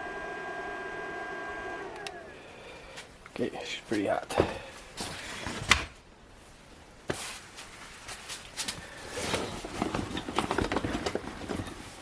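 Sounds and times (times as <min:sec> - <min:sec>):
tools and plastic parts rustling: 0:07.1 - 0:12.0.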